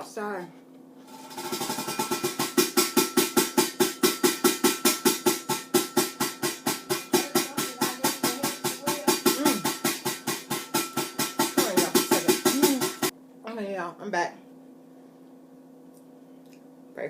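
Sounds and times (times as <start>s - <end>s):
woman speaking: 0.0s - 0.6s, 11.5s - 14.4s.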